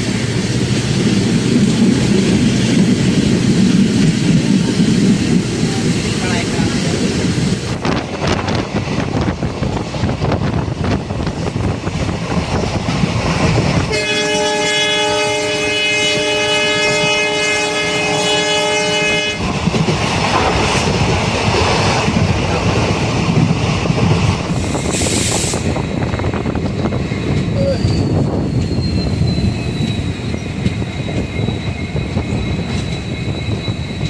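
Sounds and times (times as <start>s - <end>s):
train rumble and wheel clatter: 0.0s - 34.0s
locomotive horn blast: 13.9s - 19.5s.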